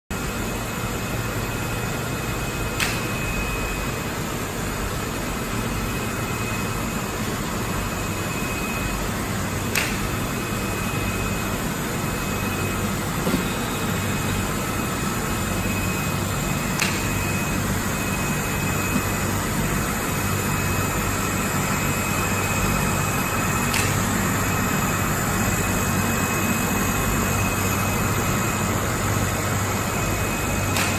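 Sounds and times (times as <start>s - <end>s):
production line hum: 0.1s - 30.9s
sharp machine click: 2.8s - 3.2s, 30.7s - 30.9s.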